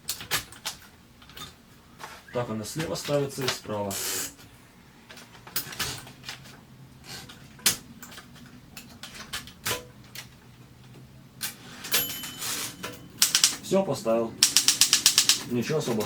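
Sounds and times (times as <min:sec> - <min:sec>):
typewriter carriage clicking and knocking: 0:00.0 - 0:01.6, 0:07.1 - 0:13.6, 0:14.4 - 0:16.0.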